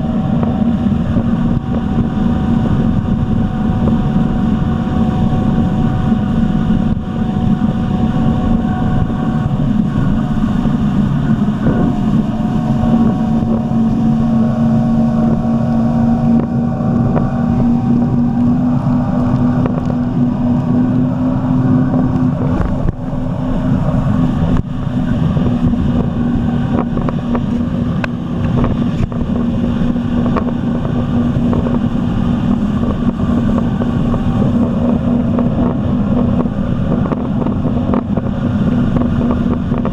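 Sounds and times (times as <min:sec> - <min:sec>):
jet ski engine running: 0:00.0 - 0:39.9
wind rushing over microphone: 0:00.0 - 0:39.9.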